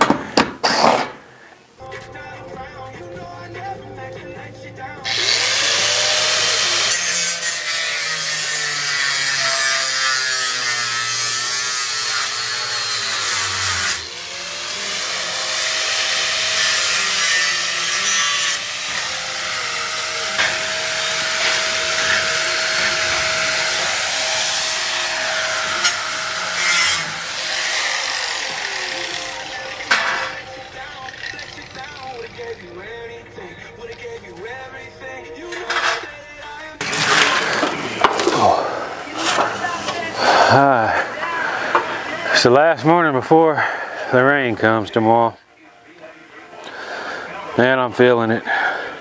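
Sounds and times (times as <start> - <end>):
power saw cutting wood: 5.1 - 32.6, 36.8 - 43.0.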